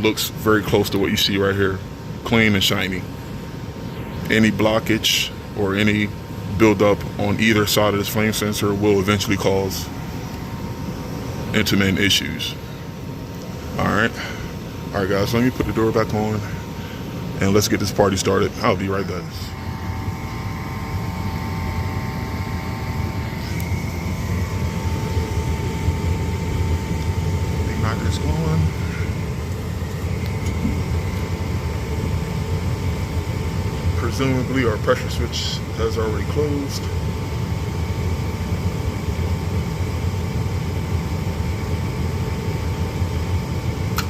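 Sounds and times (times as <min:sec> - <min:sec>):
furnace inducer motor humming: 0:00.0 - 0:44.0.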